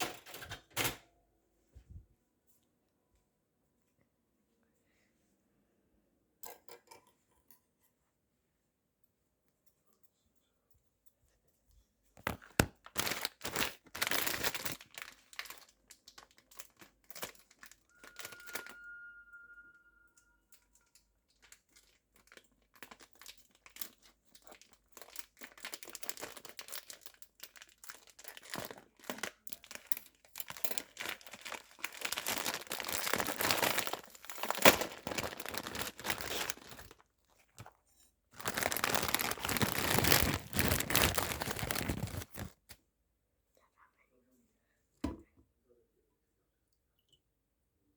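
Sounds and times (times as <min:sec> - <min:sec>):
plastic packaging crinkling and tearing: 0:12.2 - 0:18.8, 0:21.4 - 0:37.7, 0:38.4 - 0:42.8
steady high tone: 0:18.4 - 0:20.4.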